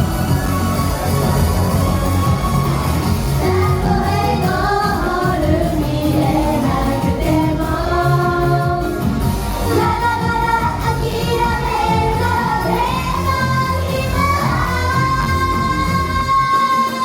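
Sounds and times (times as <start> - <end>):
backing track with heavy beat: 0.0 - 17.0
women singing together: 3.4 - 17.0.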